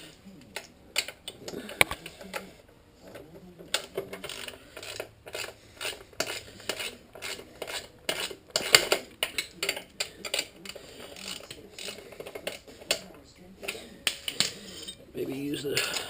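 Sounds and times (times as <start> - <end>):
hand tool clinking on metal: 13.6 - 16.0.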